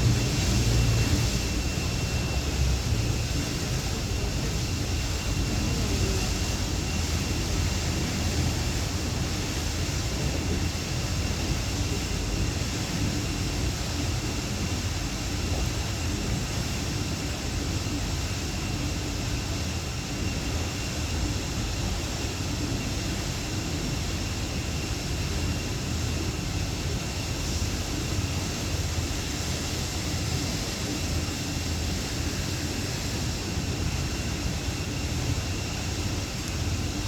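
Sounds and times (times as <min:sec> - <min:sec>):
boat rumble and rush: 0:00.0 - 0:17.6
faint high whine: 0:00.0 - 0:37.0.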